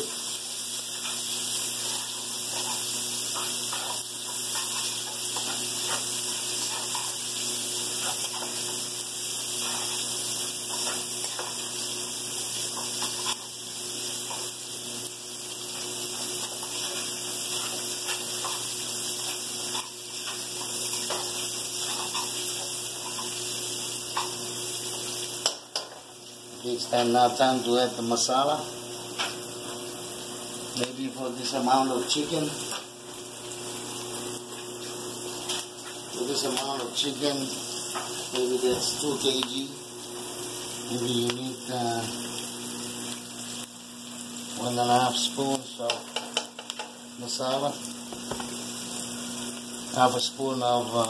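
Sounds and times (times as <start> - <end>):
food sizzling in oil: 0.0 - 51.0.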